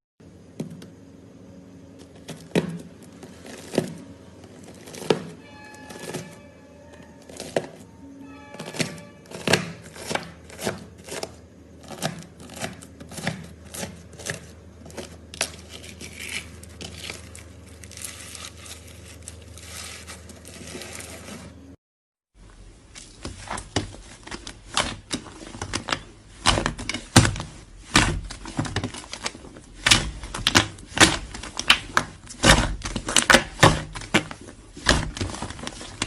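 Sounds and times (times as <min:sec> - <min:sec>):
faint music: 0:01.0 - 0:21.5.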